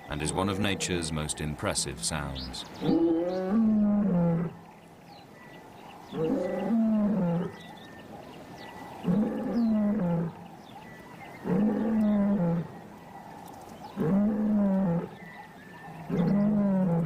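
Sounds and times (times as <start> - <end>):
lion roaring: 16.0 - 17.0.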